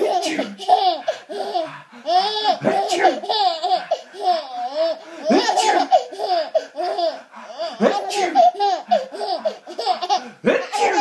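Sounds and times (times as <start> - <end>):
adult fake sneezes: 0.0 - 0.6, 2.6 - 3.2, 5.3 - 6.1, 7.8 - 8.6, 10.2 - 11.0
baby giggling: 0.0 - 11.0.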